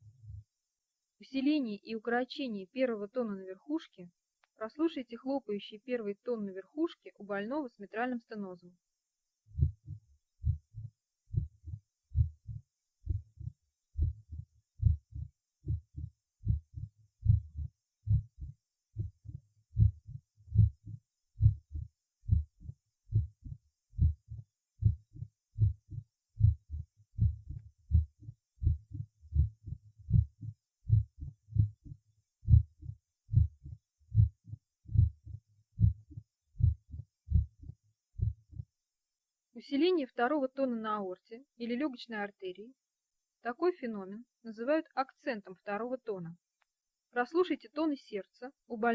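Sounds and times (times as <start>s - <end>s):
heartbeat thuds: 0.0s - 0.5s, 9.5s - 38.7s.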